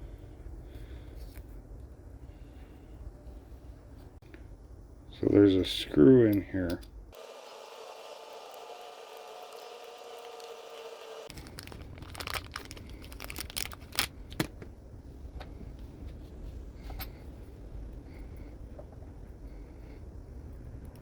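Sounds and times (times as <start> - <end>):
small parts clicking and rattling: 8.2 - 14.5.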